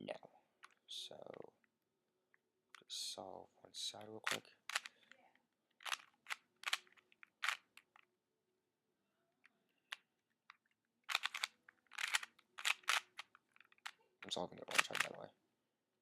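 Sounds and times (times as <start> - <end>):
puzzle cube clicking as twisted: 4.2 - 5.1, 5.8 - 8.0, 9.9 - 14.0, 14.7 - 15.2.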